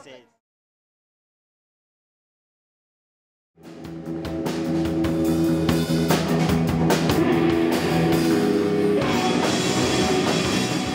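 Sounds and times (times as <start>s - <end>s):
rock music with guitar and drums: 3.6s - 10.9s.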